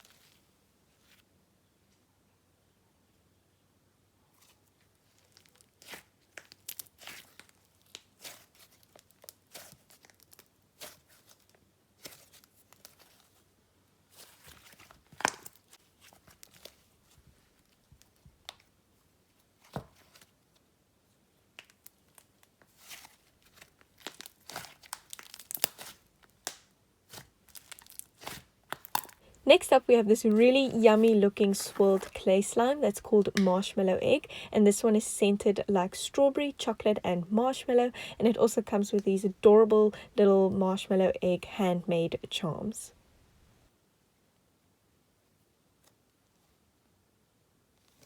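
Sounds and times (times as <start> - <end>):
hands squishing slime: 5.4 - 11.2, 22.7 - 29.6.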